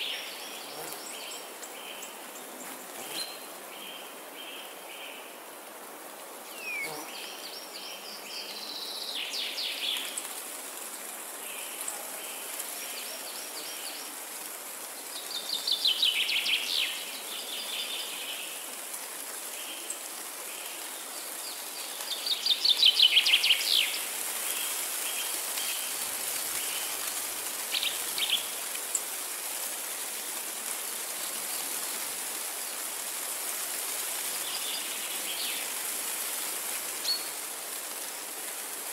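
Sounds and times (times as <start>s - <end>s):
wind rushing through trees: 0.0s - 38.9s.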